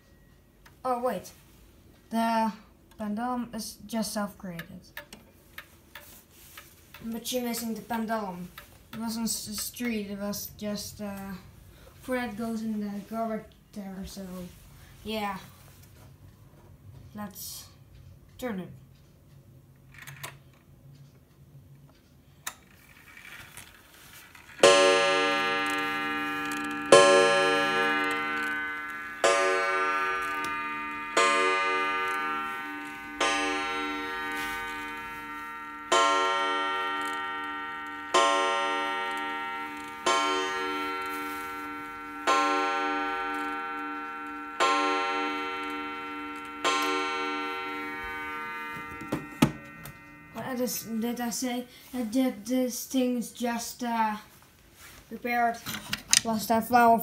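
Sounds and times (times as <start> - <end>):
wall clock striking: 4.5 - 11.4, 24.6 - 51.3.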